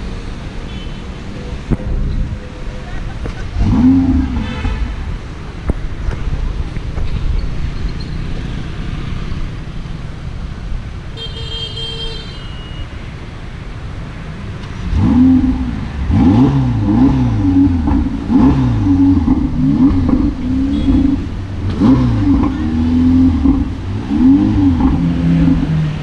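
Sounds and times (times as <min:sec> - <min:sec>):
car engine revving: 0:01.5 - 0:05.3, 0:14.6 - 0:26.0.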